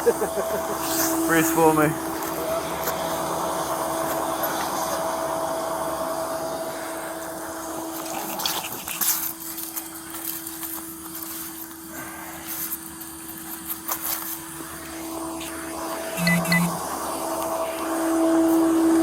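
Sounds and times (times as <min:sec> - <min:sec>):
tow truck engine whine: 0:00.0 - 0:08.2.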